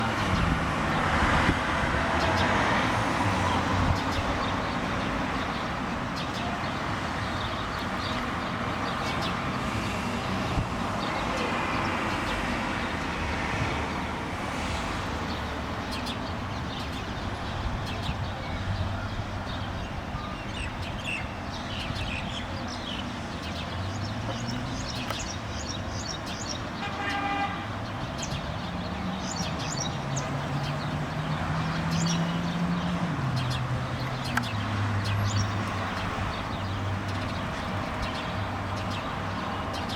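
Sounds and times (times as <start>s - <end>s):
sparrows chirping: 0.0s - 39.9s
traffic noise: 0.0s - 39.9s
car horn: 26.8s - 27.7s.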